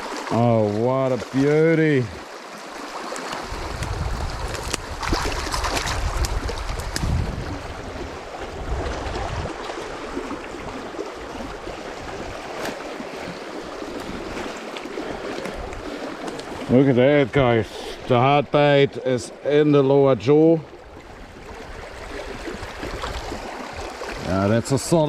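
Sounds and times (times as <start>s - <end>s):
sharp water splashes: 0.0s - 16.7s
river water rushing: 0.0s - 25.0s
low rumble on microphone: 3.6s - 9.6s.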